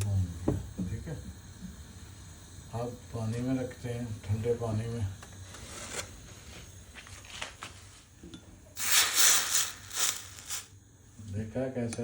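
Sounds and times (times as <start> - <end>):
hot ginger hissing in water: 0.0 - 7.1, 8.7 - 11.0.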